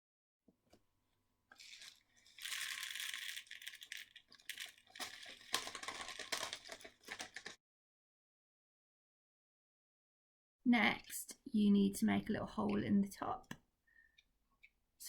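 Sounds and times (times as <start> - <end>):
plastic bottle rattling and crinkling: 1.5 - 7.6.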